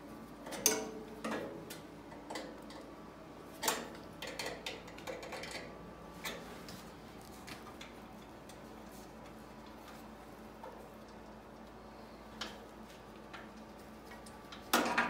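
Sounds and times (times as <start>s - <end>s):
clicks and metallic knocks: 0.4s - 2.8s.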